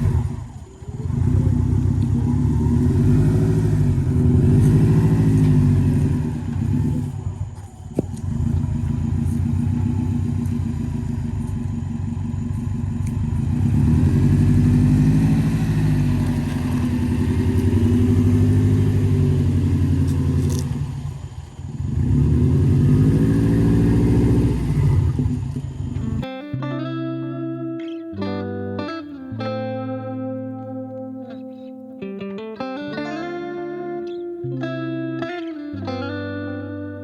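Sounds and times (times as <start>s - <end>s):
vehicle engine running under load: 0.0s - 26.2s.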